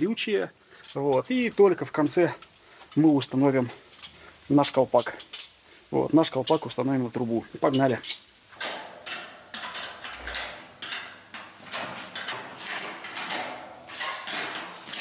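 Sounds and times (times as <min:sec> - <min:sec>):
metal pipes knocking and clattering: 0:07.7 - 0:15.0
metal pipes scraping: 0:07.7 - 0:15.0.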